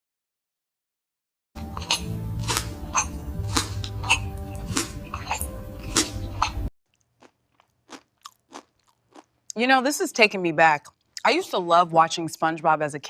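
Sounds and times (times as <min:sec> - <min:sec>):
sustained low notes: 0:01.6 - 0:06.7.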